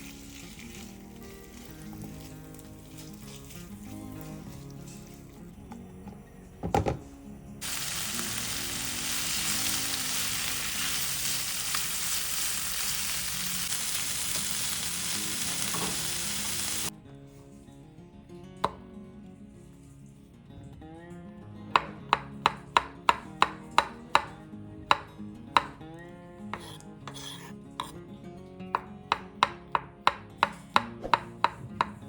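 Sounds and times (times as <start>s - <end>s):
food sizzling in hot oil: 0.0s - 5.3s, 7.6s - 16.9s.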